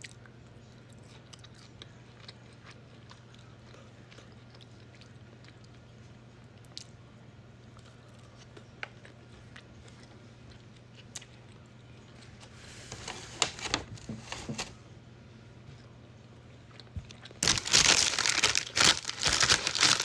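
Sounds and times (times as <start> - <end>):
faint steady hum: 0.0 - 20.0
packaging crinkling: 12.9 - 14.8, 17.4 - 20.0
crisp crunching and chewing: 16.7 - 20.0.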